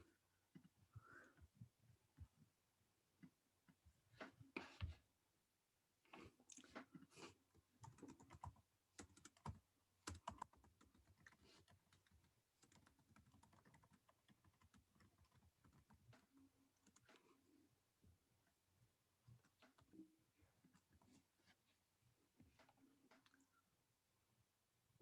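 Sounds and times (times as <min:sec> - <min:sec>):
faint small clicks and taps: 0:22.3 - 0:23.6.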